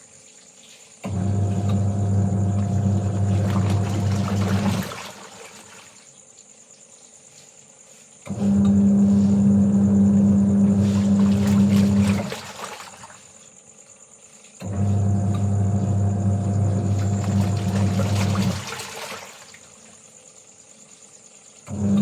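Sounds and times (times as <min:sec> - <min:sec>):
washing machine motor humming: 0:01.0 - 0:06.0, 0:08.3 - 0:13.3, 0:14.6 - 0:20.0, 0:21.6 - 0:22.0
water sloshing: 0:01.4 - 0:06.1, 0:10.6 - 0:13.5, 0:16.6 - 0:20.1.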